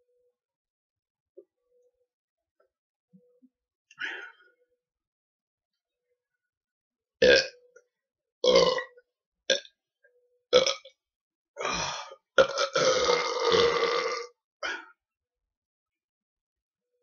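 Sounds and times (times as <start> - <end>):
man burping: 8.4 - 8.9, 11.6 - 14.9.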